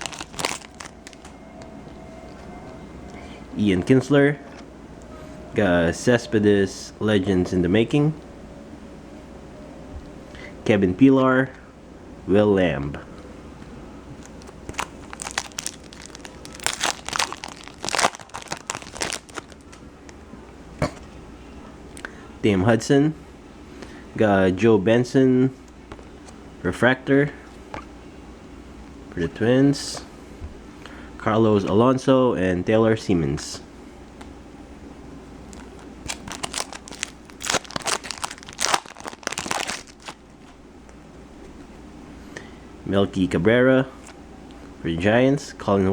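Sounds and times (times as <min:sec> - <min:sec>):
foil wrapper crinkling and tearing: 0:00.0 - 0:01.3, 0:14.4 - 0:19.8, 0:35.5 - 0:40.3.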